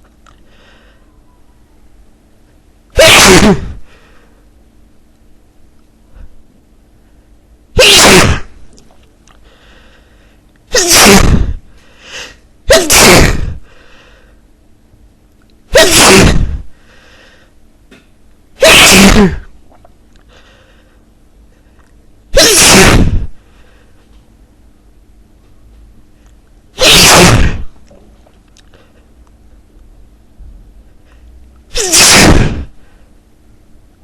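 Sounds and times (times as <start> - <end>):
faint breaths: 0.4 - 1.3, 9.3 - 10.5, 13.5 - 14.5, 16.6 - 17.6, 20.2 - 22.0
man sneezing: 3.0 - 3.9, 7.8 - 8.6, 10.7 - 13.6, 15.7 - 16.7, 18.6 - 19.5, 22.3 - 23.4, 26.8 - 27.7, 31.7 - 32.8.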